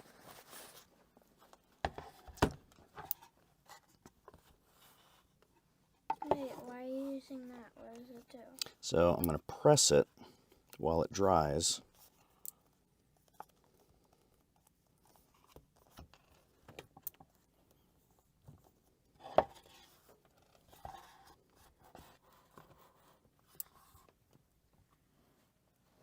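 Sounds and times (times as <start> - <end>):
knocks and scrapes on work surface: 1.8 - 3.1, 19.2 - 19.8.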